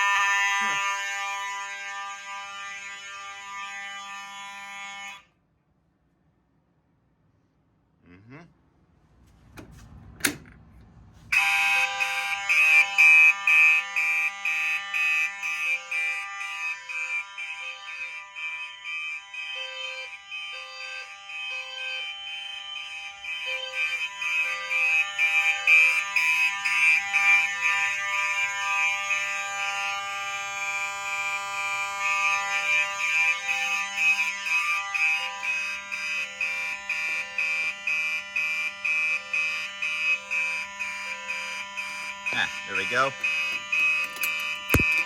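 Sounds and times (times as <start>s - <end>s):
fire alarm horns: 0.0s - 5.3s, 11.2s - 45.0s
fast on-off alarm beat: 11.4s - 45.0s
horn pulsing in threes: 23.2s - 45.0s.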